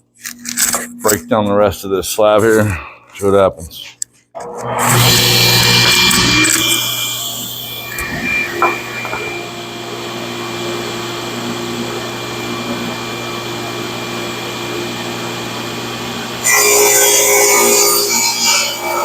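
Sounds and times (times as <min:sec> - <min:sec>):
dust collector whirring: 0:04.4 - 0:16.8.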